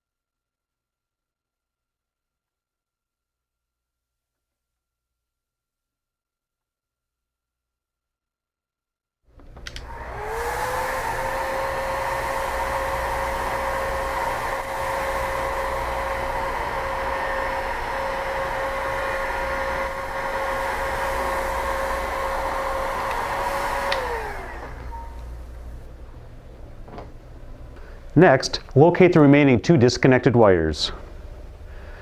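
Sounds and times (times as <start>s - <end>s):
heat gun fan whining: 9.4s - 32.0s.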